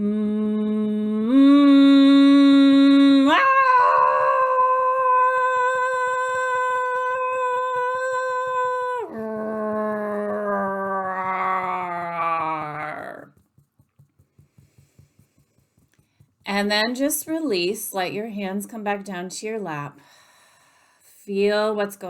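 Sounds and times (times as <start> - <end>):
woman holding a long vocal tone: 0.0 - 13.3
fingertips tapping on chest: 3.3 - 17.7.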